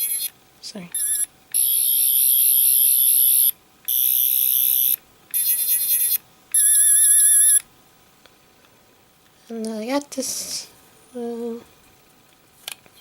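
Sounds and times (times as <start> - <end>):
toy electronic warbling buzz: 0.0 - 0.3, 0.9 - 7.7.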